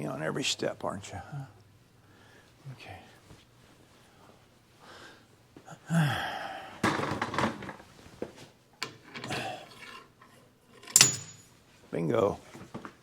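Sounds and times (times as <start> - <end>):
man grunting and breathing: 5.7 - 6.8, 9.3 - 9.8.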